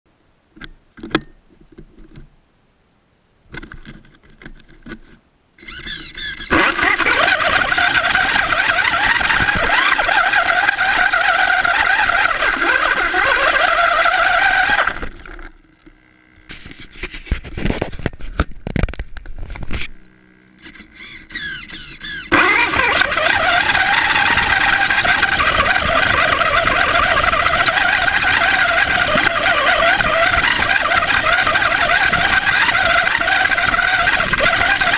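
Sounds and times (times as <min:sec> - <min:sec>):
tyre noise: 0:04.9 - 0:15.5, 0:20.6 - 0:34.9
radio-controlled car motor whine: 0:05.6 - 0:34.9.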